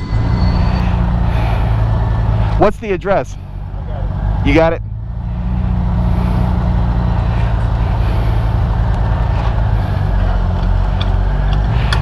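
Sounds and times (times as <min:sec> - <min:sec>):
steady rushing noise: 0:00.0 - 0:03.6
motorcycle engine running: 0:00.0 - 0:12.0.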